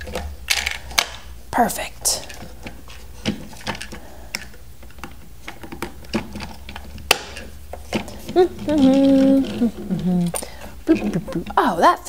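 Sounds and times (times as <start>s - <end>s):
toy pieces clicking: 8.2s - 11.6s.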